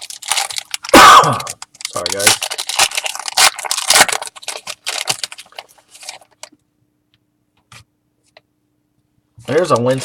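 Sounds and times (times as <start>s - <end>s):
foil wrapper torn and crinkled: 0.0s - 6.6s.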